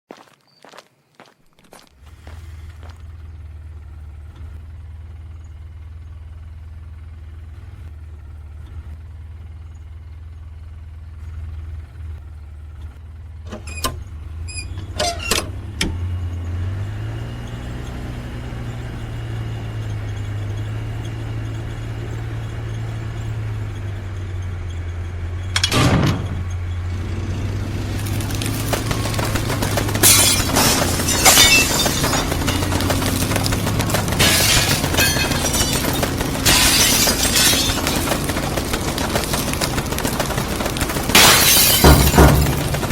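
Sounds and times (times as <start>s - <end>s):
wood chipper motor running: 15.5s - 42.9s.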